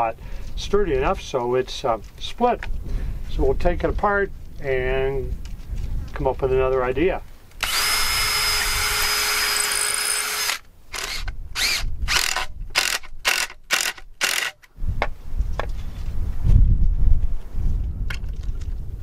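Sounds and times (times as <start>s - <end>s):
power drill running: 7.6s - 14.6s.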